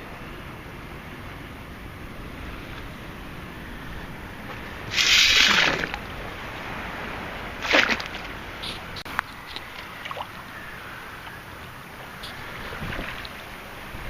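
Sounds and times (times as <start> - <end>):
surf: 0.0 - 14.0
wind: 0.0 - 14.0
scoop scraping wet sand: 4.9 - 6.0.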